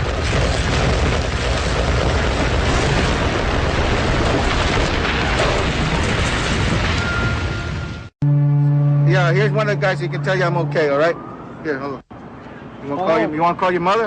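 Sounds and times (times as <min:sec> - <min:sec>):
building collapsing rumbling roar: 0:00.0 - 0:08.1.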